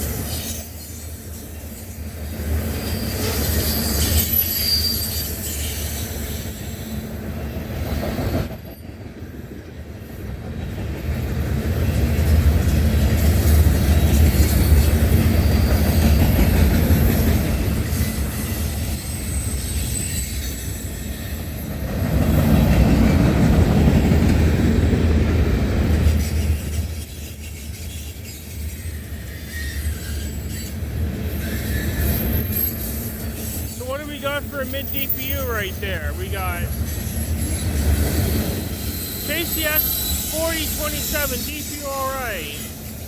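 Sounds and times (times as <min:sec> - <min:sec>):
train wheels rumbling on rail: 0:00.0 - 0:43.0
high wheel squeal: 0:02.9 - 0:06.6, 0:38.6 - 0:41.4.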